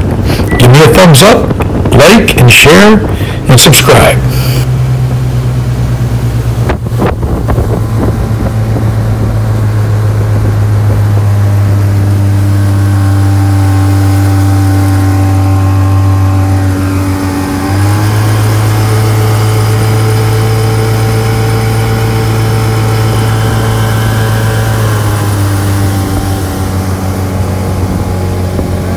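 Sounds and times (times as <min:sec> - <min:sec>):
outboard motor running: 0:00.0 - 0:28.9.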